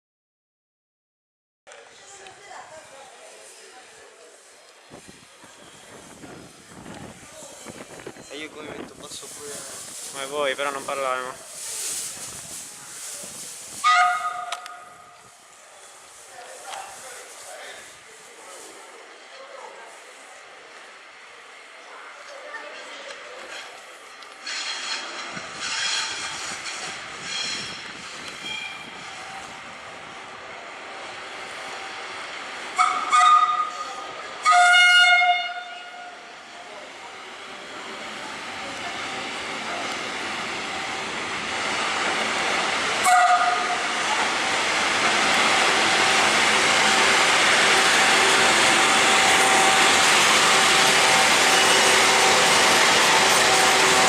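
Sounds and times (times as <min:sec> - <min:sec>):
train rumbling: 0:02.1 - 0:54.0
train horn blast: 0:13.8 - 0:15.2, 0:32.8 - 0:36.2, 0:43.0 - 0:43.9.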